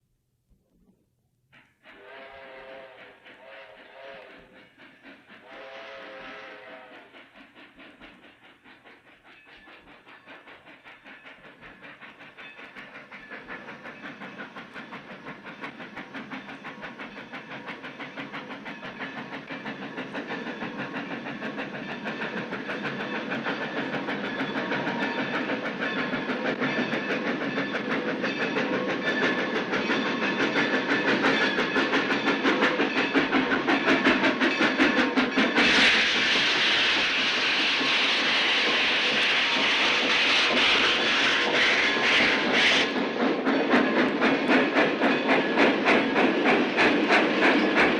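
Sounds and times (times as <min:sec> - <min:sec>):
steam locomotive pulsing beat: 0:01.5 - 0:47.9.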